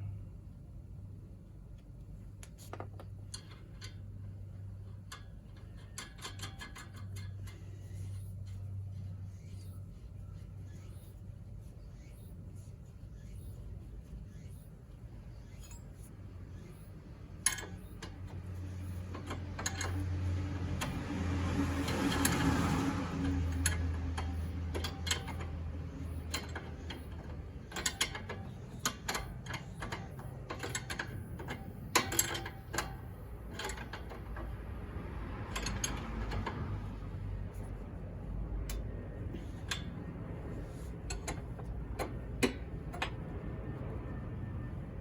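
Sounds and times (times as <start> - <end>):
steady noise with low hum: 0.0 - 45.0
ratchet clicking: 2.4 - 10.1, 11.9 - 43.6
metal clinks and knocks: 2.5 - 8.6, 17.4 - 37.8.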